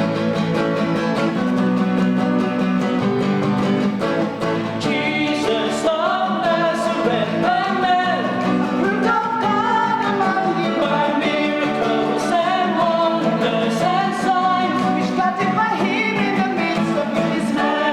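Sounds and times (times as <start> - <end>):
strummed acoustic guitar: 0.0 - 17.9
person singing: 4.8 - 17.9.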